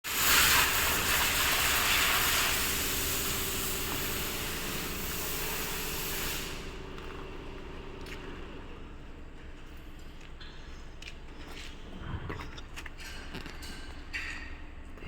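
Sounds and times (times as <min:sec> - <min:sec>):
machine motor hum: 0:00.7 - 0:10.8.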